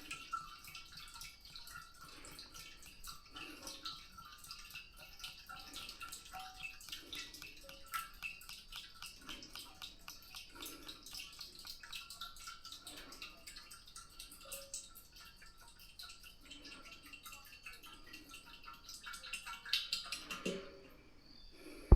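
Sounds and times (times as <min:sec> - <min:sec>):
fluid glugging into tank: 0:00.0 - 0:21.1
dripping: 0:00.0 - 0:21.9
small ticks: 0:00.1 - 0:16.2.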